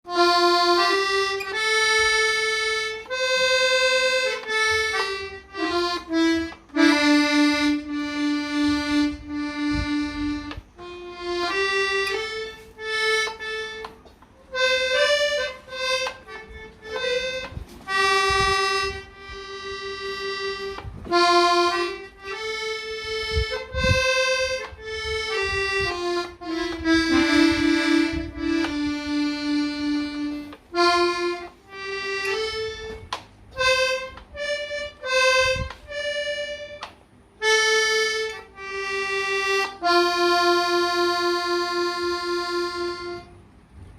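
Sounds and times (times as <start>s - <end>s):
free-reed instrument melody: 0.1s - 43.5s
soft low thumps: 4.4s - 13.9s, 14.5s - 36.8s.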